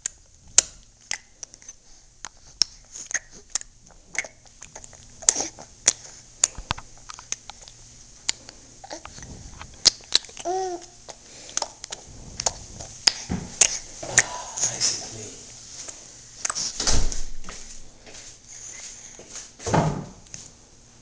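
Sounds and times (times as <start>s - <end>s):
baby clicking and popping mouth: 0.0s - 9.2s, 9.8s - 14.3s, 16.4s - 16.7s
baby voice: 10.4s - 11.0s.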